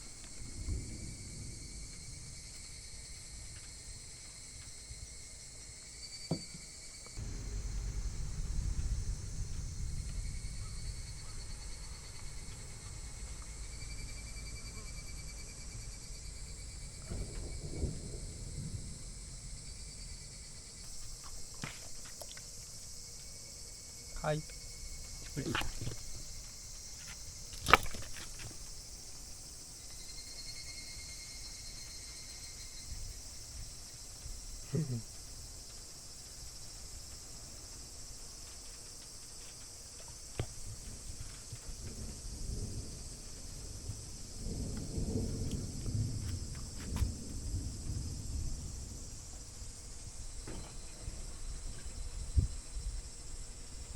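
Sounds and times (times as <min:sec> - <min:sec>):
crickets trilling: 0:00.0 - 0:53.9
insect chirring: 0:00.0 - 0:53.9
low rumble: 0:07.2 - 0:21.2.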